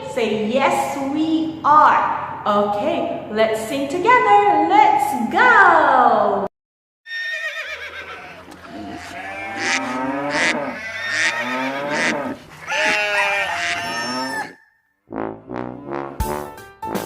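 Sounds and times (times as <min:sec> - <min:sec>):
animals bleating and mooing: 0:07.1 - 0:14.7.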